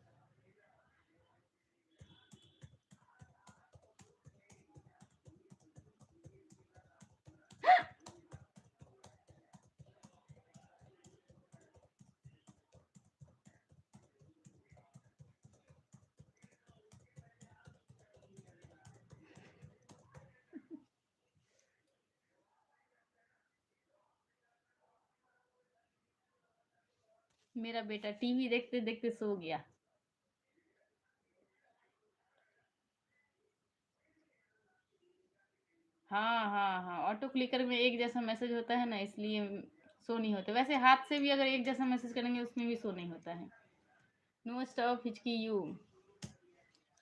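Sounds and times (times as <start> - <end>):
rapid soft tapping: 2.0 - 20.8
loud hiccup: 7.6 - 8.0.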